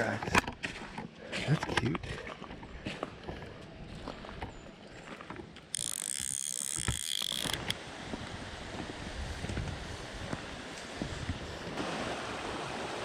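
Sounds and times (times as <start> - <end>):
fly reel drag buzzing: 5.7 - 7.7.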